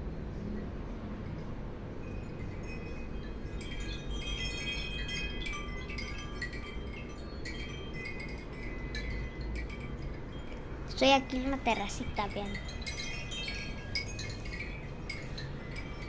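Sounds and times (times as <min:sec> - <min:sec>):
wind chimes ringing: 0:01.2 - 0:16.0.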